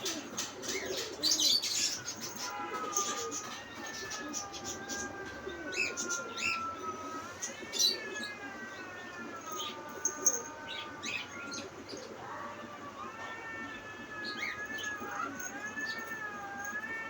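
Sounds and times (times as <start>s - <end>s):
small birds chirping: 0.0s - 17.0s
kitten meowing: 12.2s - 17.0s.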